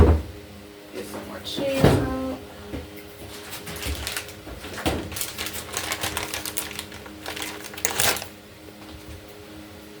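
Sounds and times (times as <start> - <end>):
items clicking on kitchen counter: 3.4 - 8.3.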